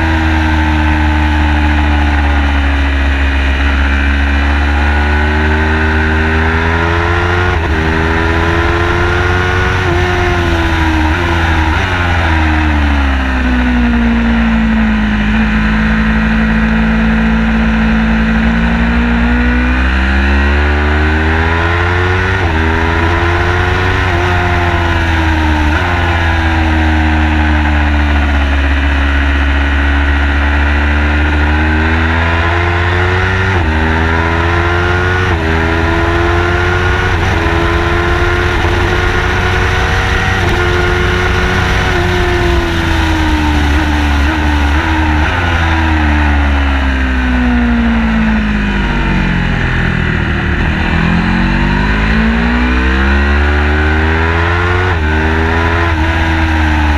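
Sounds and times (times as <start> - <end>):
race car engine accelerating: 0.0 - 56.9
steady low rumble: 7.4 - 16.4, 35.4 - 52.9.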